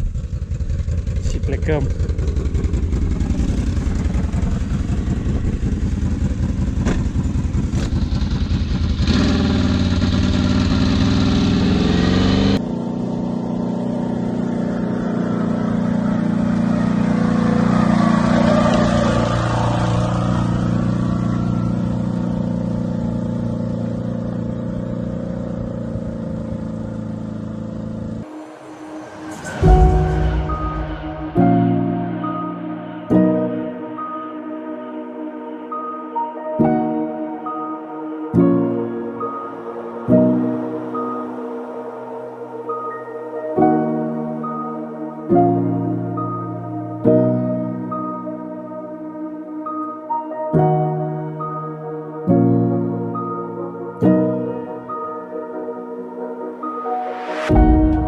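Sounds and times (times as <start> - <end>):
quad bike engine revving: 0.0 - 28.3.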